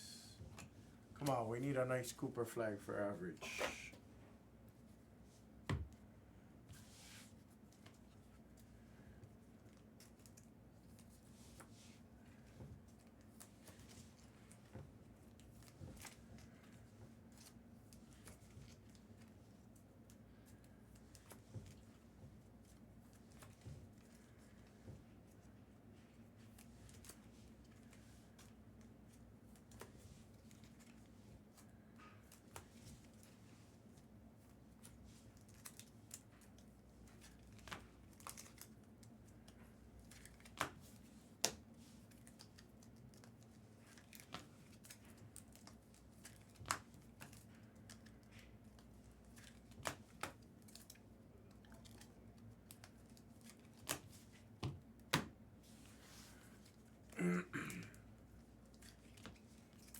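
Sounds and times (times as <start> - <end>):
low steady hum: 0.0 - 11.6
soft rustle: 6.6 - 46.6, 55.6 - 57.0
handling trading cards: 34.0 - 57.0.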